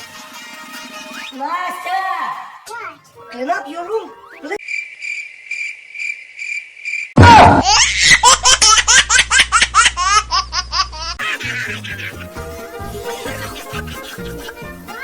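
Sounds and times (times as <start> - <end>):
cricket chirping: 4.6 - 7.2
child giggling: 7.6 - 12.2.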